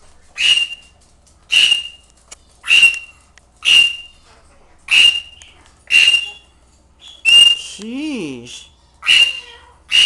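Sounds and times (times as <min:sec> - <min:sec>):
parrot screaming: 0:00.4 - 0:00.8, 0:02.6 - 0:04.1, 0:04.9 - 0:06.4, 0:09.0 - 0:10.0.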